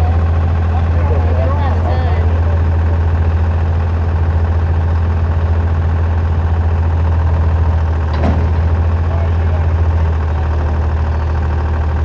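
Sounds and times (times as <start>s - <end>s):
engine idling: 0.0s - 12.0s
clank: 8.0s - 8.9s.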